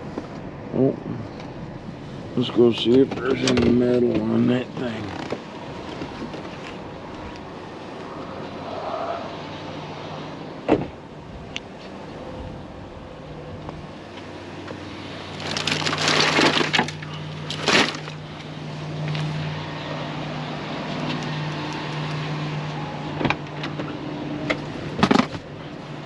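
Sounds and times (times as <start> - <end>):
vehicle engine idling: 0.0 - 26.0
loud noisy crunch: 15.3 - 18.4.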